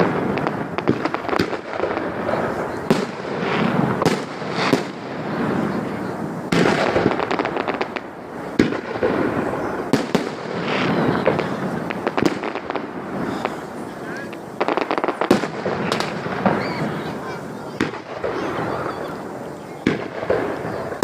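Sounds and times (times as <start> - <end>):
firework shells bursting with bangs: 0.0 - 21.0
rapid firework crackling: 0.0 - 21.0.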